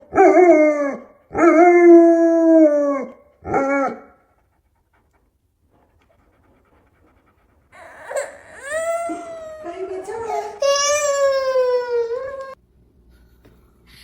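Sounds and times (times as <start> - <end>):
dog howling: 7.8 - 12.6.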